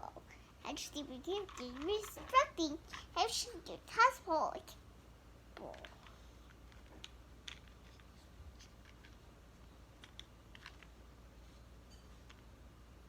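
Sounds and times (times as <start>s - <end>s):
plastic toy cars clicking: 0.8s - 3.4s.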